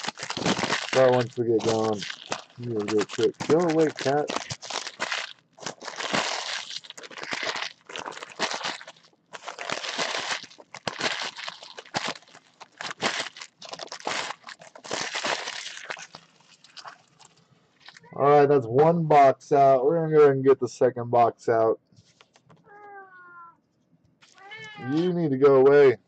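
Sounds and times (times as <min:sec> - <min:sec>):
wrappers crinkling and tearing: 0:00.0 - 0:18.1, 0:24.2 - 0:25.0.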